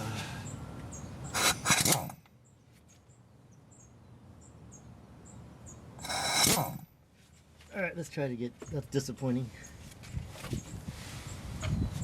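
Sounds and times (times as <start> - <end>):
impact wrench hammering: 1.3 - 2.2, 6.0 - 6.8.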